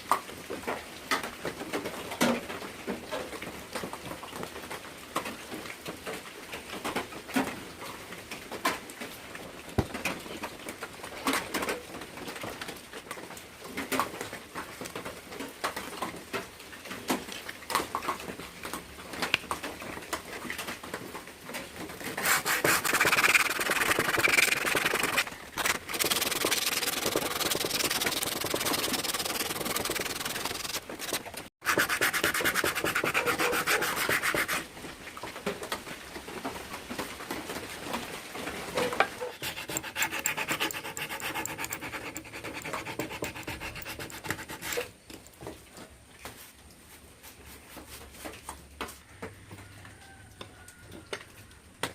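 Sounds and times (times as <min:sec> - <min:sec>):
sandpaper rubbing on wood: 0:22.1 - 0:34.6, 0:39.2 - 0:44.9.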